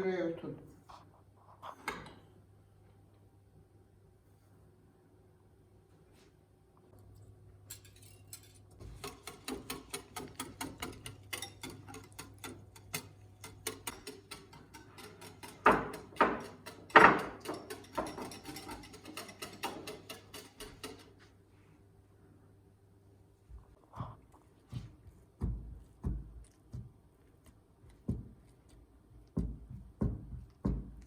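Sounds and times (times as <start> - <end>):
utensil clicking against bowl: 8.9 - 21.1.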